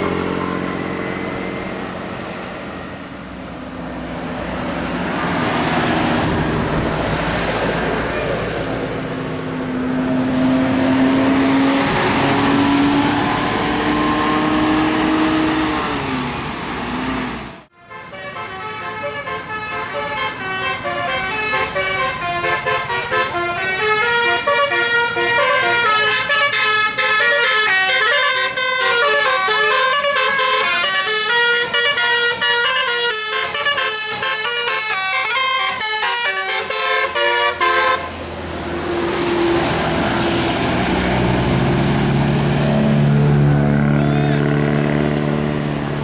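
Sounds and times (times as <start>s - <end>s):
passing vehicle rush: 0.0s - 17.7s, 18.6s - 46.0s
musical vehicle horn melody: 17.7s - 38.2s.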